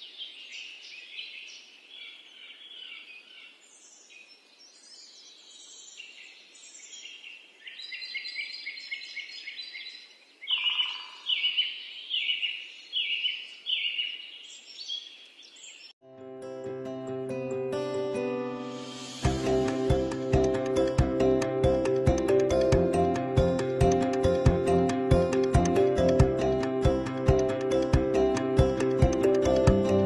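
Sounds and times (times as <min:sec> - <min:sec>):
birds chirping and singing: 0:00.0 - 0:15.9
gentle acoustic guitar music: 0:16.0 - 0:30.0.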